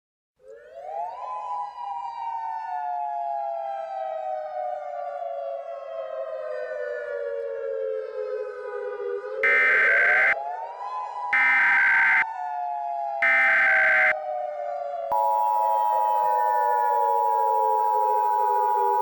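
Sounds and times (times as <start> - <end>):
siren wailing: 9.4 - 10.4, 11.4 - 12.2, 13.2 - 14.2, 15.1 - 19.0.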